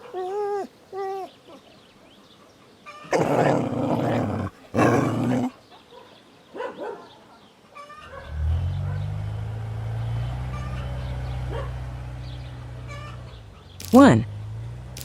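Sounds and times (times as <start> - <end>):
dog barking: 0.0 - 0.3, 3.1 - 7.5, 8.1 - 9.1, 11.4 - 11.9.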